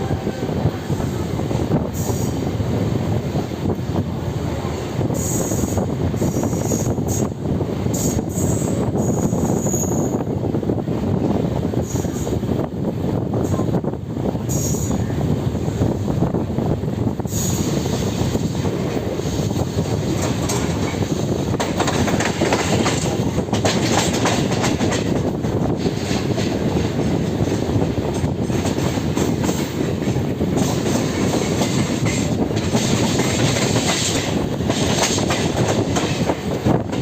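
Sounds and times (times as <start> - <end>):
train rumble: 0.0 - 37.0
train wheels clattering over rails: 17.0 - 37.0.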